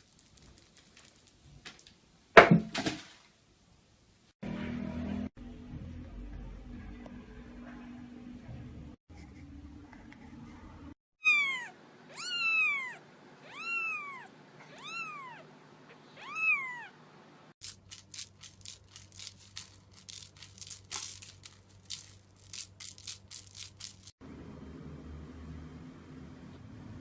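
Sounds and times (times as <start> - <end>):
cat meowing: 11.2 - 15.5, 16.1 - 17.0.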